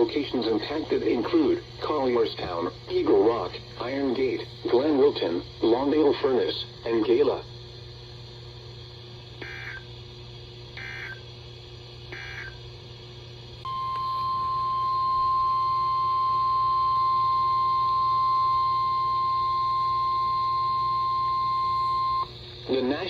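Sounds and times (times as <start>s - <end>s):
steady warning alarm tone: 9.4s - 9.8s, 10.8s - 11.2s, 12.1s - 12.6s, 13.7s - 22.3s.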